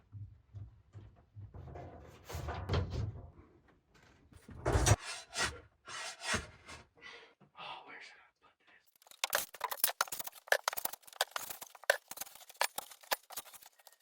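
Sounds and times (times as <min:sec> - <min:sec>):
wood rubbing and scraping: 0:09.0 - 0:14.0.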